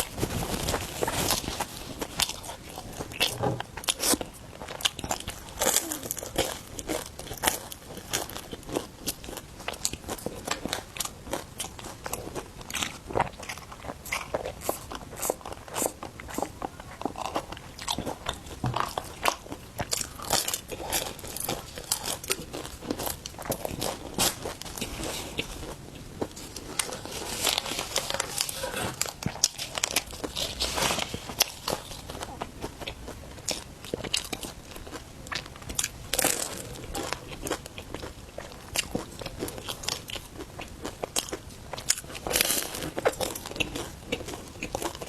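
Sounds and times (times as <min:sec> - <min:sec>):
crunching and chewing bread: 0:00.0 - 0:45.0.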